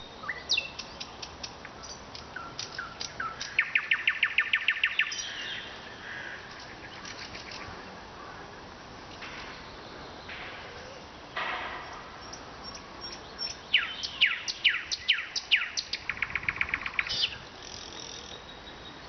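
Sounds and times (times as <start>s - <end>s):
nightingale singing: 0.0s - 7.7s, 9.6s - 19.0s.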